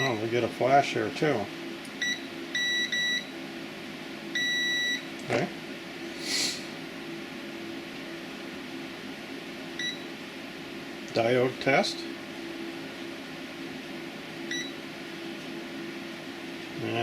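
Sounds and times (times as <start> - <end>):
multimeter continuity beeps: 2.0 - 3.3, 4.4 - 5.1, 9.8 - 10.1, 14.5 - 14.8.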